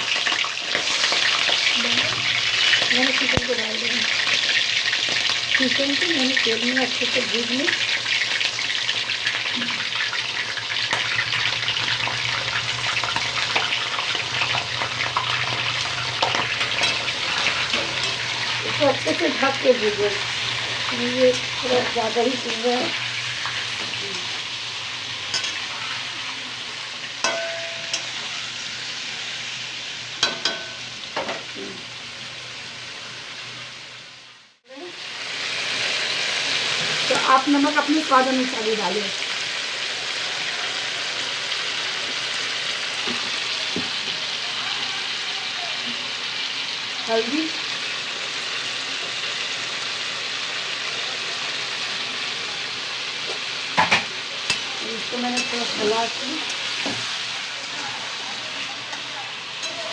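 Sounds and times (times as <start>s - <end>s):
chicken sizzling in hot oil: 0.0s - 59.9s
metal clinks against pan: 27.2s - 28.2s, 30.2s - 31.4s.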